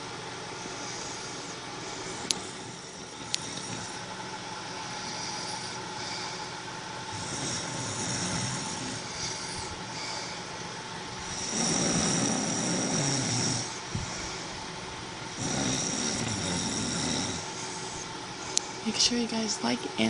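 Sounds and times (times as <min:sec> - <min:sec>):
steady background hum: 0:00.0 - 0:20.0
man snoring: 0:00.7 - 0:04.1, 0:04.8 - 0:10.5, 0:11.2 - 0:14.4, 0:15.3 - 0:18.1.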